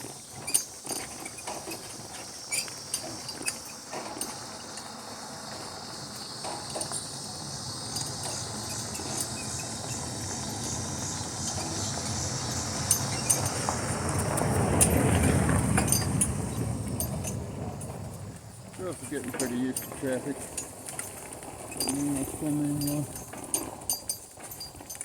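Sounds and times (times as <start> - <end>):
insects chirring: 0.0 - 25.0
motor vehicle passing: 4.2 - 23.8.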